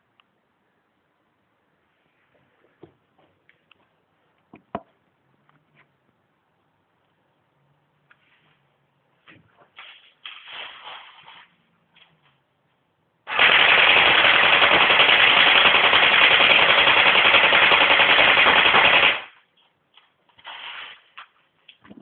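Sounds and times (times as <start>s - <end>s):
airsoft gun full-auto burst: 13.3s - 19.4s.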